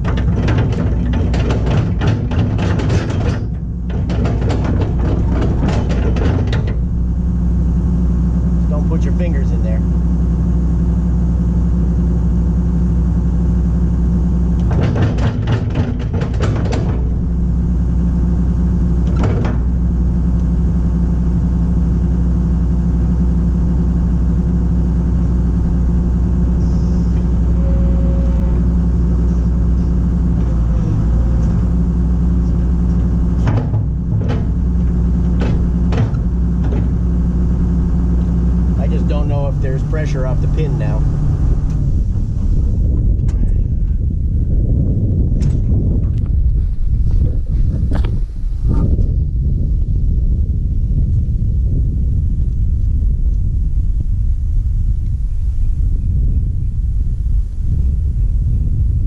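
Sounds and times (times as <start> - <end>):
excavator bucket knocks: 0.0 - 6.8, 14.6 - 17.2, 33.4 - 37.0
diesel engine idling: 0.0 - 59.0.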